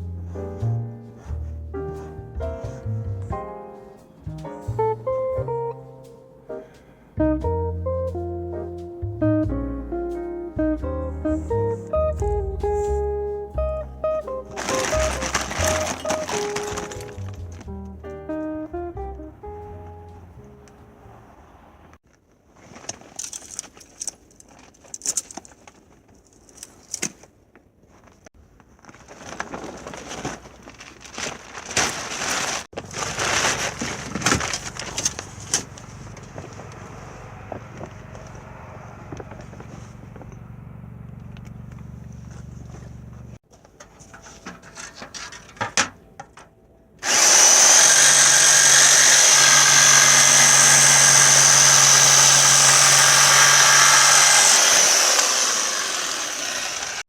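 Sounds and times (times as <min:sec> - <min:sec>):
tools clattering and knocking: 0:43.5 - 0:46.6
loud steady motor: 0:47.0 - 0:57.0
power tool humming: 0:47.0 - 0:57.0.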